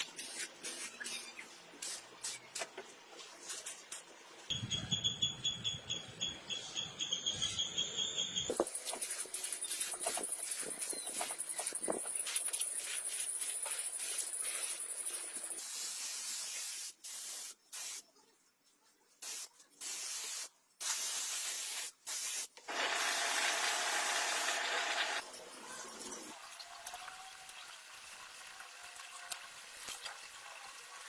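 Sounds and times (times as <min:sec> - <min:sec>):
spray hissing bursts: 0:13.8 - 0:18.0, 0:19.2 - 0:25.1.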